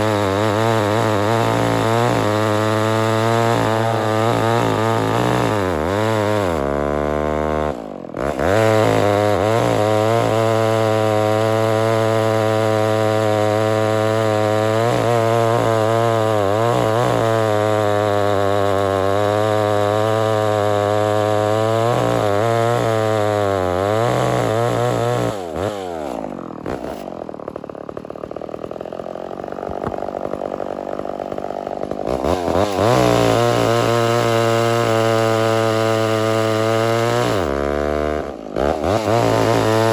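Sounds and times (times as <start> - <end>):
chainsaw cutting: 0.0 - 39.9.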